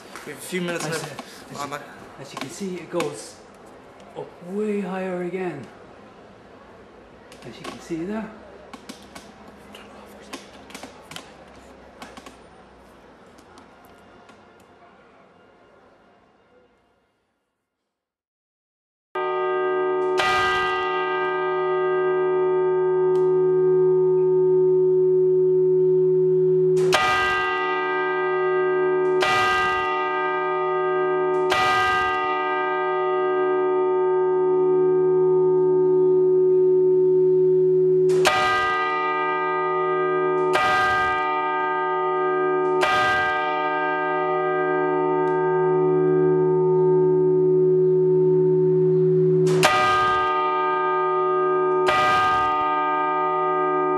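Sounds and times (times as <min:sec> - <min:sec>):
church bell ringing: 0:19.2 - 0:53.9.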